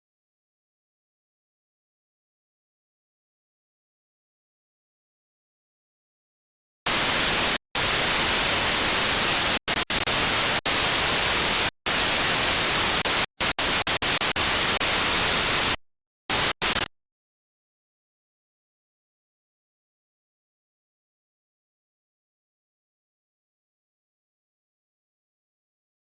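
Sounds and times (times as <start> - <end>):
static hiss bursts: 6.9 - 16.9.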